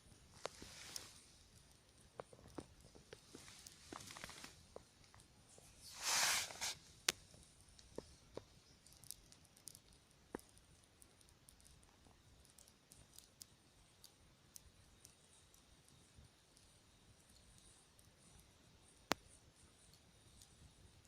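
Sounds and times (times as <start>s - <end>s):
campfire crackling: 0.0s - 21.0s
rustling noise: 0.3s - 1.3s, 3.2s - 4.6s, 5.6s - 6.9s.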